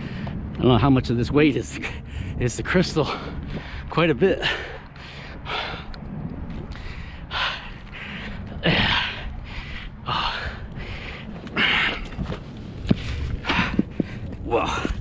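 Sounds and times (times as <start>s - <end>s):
man breathing hard and gasping: 3.1s - 6.0s, 6.7s - 12.3s, 13.0s - 15.0s.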